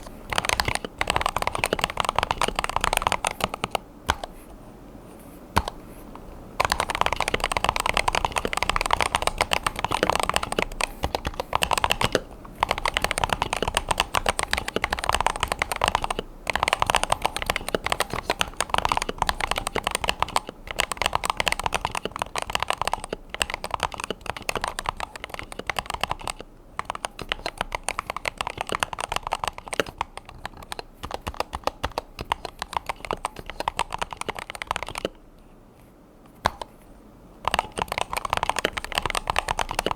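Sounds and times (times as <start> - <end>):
fast keyboard typing: 0.0 - 4.4, 5.6 - 5.8, 6.6 - 35.2, 37.4 - 39.9.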